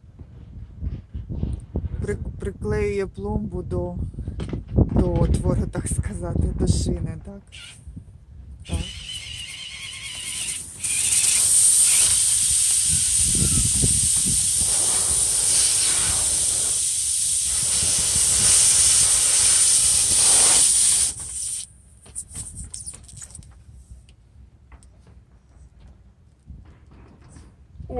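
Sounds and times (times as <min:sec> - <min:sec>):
pressurised air hissing: 0:08.7 - 0:23.0.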